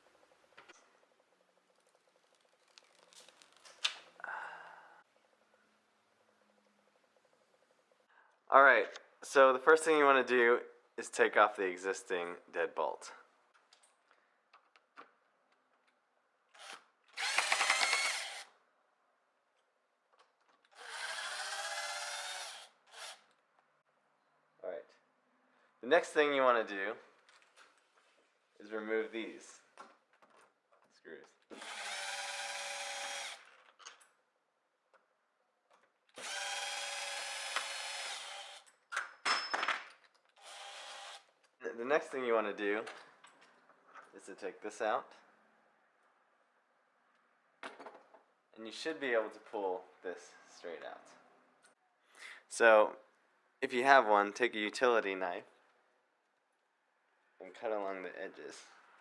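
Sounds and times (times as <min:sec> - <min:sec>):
power drill running: 0:16.6 - 0:18.6, 0:20.7 - 0:23.3, 0:31.5 - 0:33.5, 0:36.2 - 0:38.7, 0:40.4 - 0:41.3.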